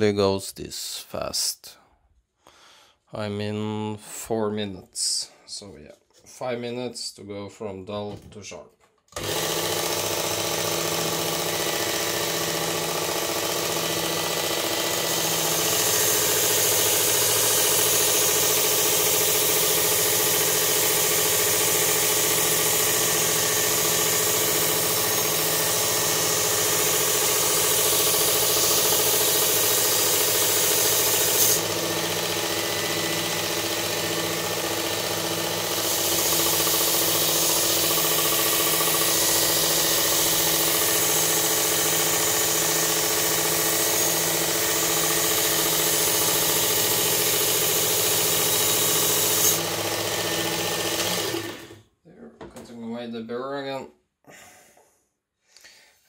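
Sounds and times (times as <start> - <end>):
belt sharpener motor hum: 9.2 - 51.8.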